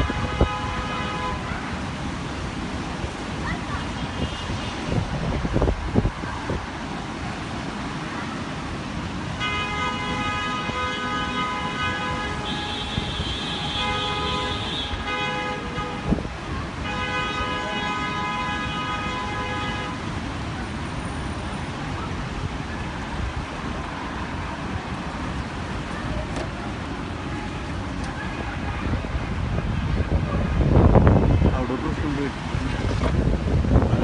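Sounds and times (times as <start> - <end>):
vehicle horn blast: 0.0 - 1.5, 9.4 - 20.0
wind buffeting microphone: 0.0 - 7.5, 15.7 - 16.9, 27.5 - 34.0
wind and traffic rumble: 0.0 - 34.0.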